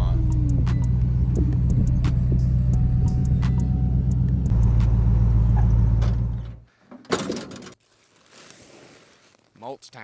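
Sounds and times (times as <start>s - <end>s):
deep bass line: 0.0s - 6.3s.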